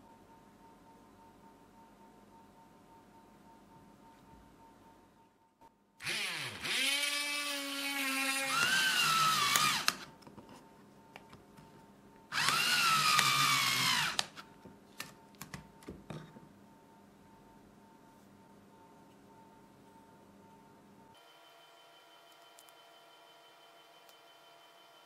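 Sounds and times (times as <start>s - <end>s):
power tool motor whining: 6.0s - 10.0s, 12.3s - 14.3s.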